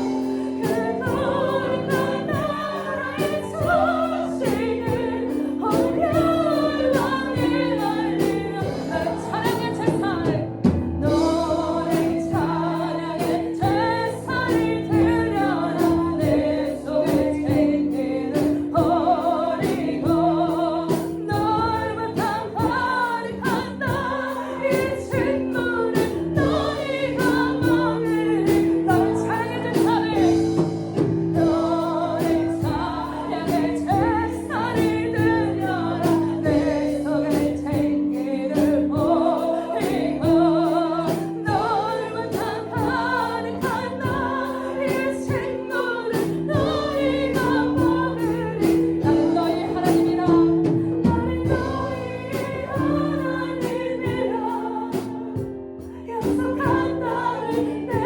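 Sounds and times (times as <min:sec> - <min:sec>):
band playing: 0:00.0 - 0:58.0
group of voices singing: 0:00.0 - 0:58.0
steady drum beat: 0:00.0 - 0:58.0.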